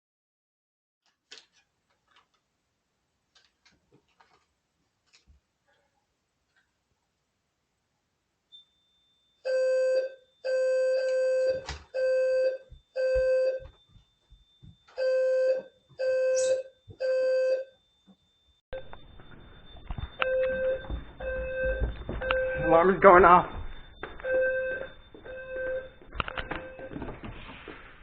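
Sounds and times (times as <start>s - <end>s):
fire alarm horns pulsing: 18.7s - 27.0s.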